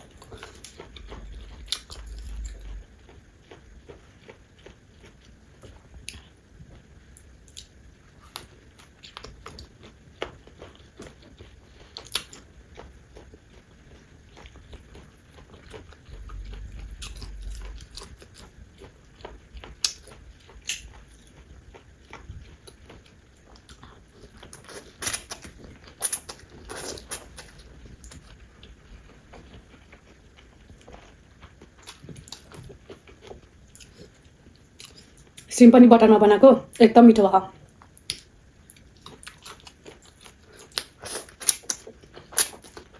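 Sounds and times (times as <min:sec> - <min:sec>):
wet chewing and biting: 0:00.0 - 0:35.5, 0:37.8 - 0:42.9
low rumble: 0:00.4 - 0:03.1, 0:15.9 - 0:19.2.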